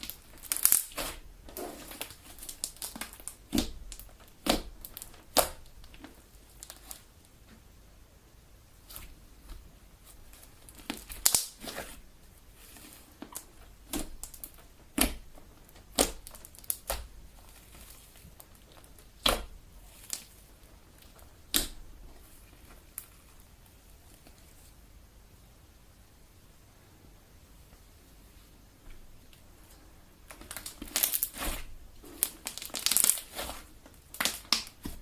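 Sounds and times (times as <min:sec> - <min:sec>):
slime popping and crackling: 0:00.0 - 0:07.1, 0:10.2 - 0:12.0, 0:12.6 - 0:23.2, 0:30.3 - 0:35.0.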